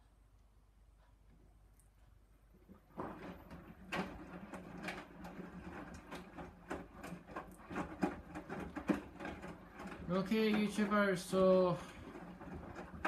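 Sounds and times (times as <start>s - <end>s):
washing machine motor hum: 0.0s - 13.0s
tumbling load clicks and knocks: 2.7s - 13.0s.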